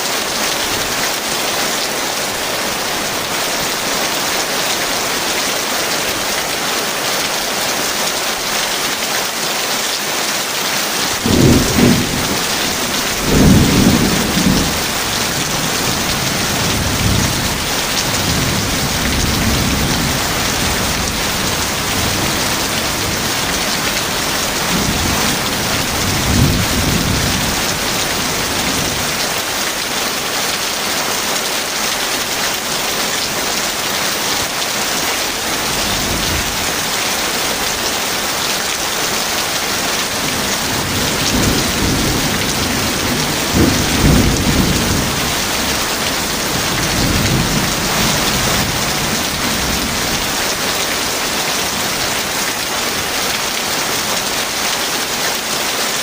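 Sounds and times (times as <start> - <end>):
heavy rain: 0.0 - 56.0
thunder rumbling: 11.2 - 29.1, 40.0 - 50.4.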